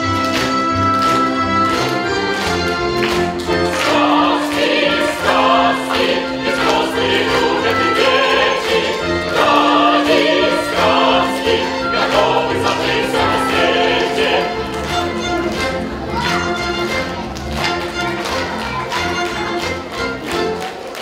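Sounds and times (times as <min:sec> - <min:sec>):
orchestra playing: 0:00.0 - 0:21.0
voices singing in chorus: 0:03.3 - 0:15.2.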